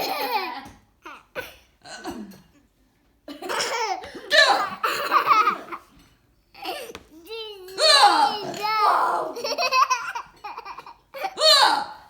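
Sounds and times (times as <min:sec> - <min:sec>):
young child laughing: 0:09.2 - 0:11.4.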